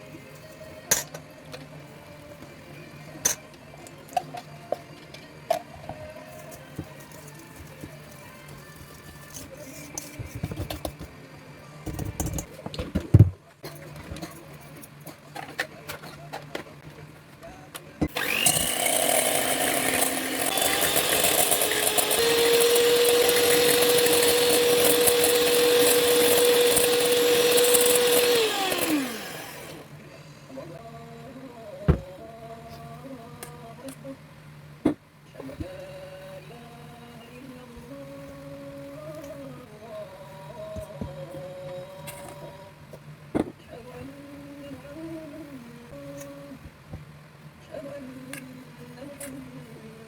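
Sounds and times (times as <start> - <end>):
electric kitchen mixer running: 18.1 - 29.9.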